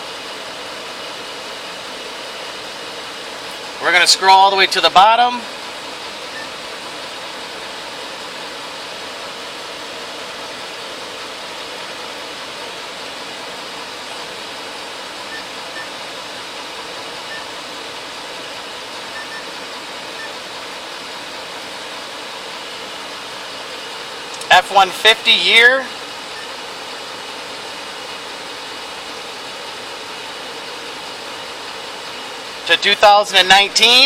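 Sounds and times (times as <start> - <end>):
climate-control blower hissing: 0.0 - 34.0
faint short beeps: 19.1 - 19.5.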